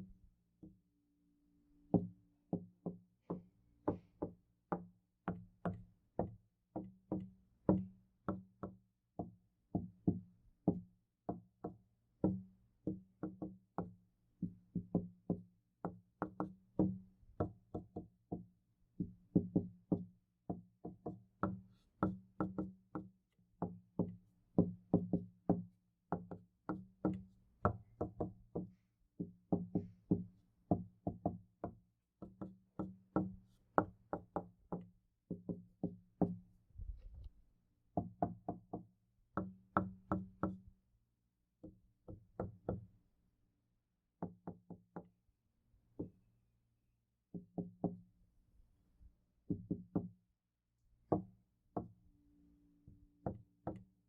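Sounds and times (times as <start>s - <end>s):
knocking on a door: 22.4s - 36.4s, 44.2s - 45.1s, 49.5s - 50.1s.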